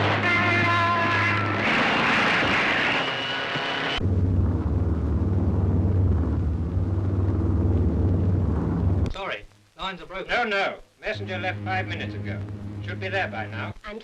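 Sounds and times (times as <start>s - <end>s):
dense rushing noise: 0.0s - 9.1s
low drone of aircraft engines: 0.0s - 9.1s, 11.2s - 13.7s.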